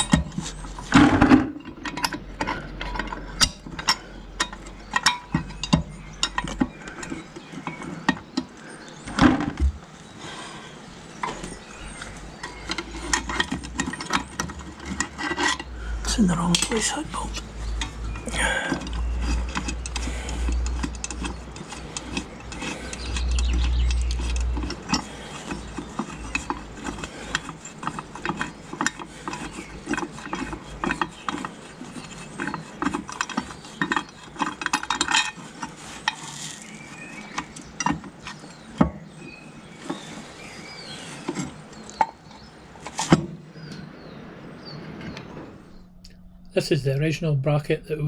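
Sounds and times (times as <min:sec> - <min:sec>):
tools clinking on metal parts: 0:00.0 - 0:08.2, 0:16.5 - 0:18.0.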